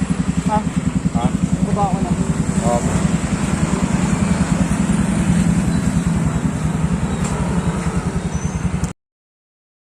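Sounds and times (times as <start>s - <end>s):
motorcycle engine running: 0.0s - 9.0s.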